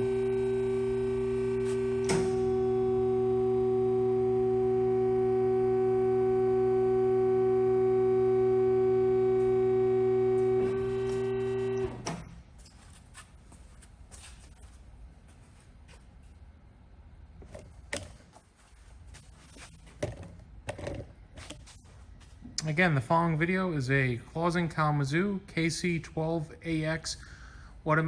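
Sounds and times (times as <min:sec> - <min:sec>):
band saw electric hum: 0:00.0 - 0:13.2.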